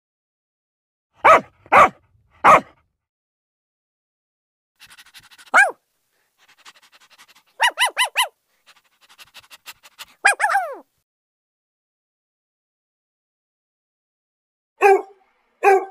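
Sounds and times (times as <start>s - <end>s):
dog barking: 1.2s - 2.8s, 4.8s - 5.8s, 6.5s - 10.8s, 14.8s - 15.9s.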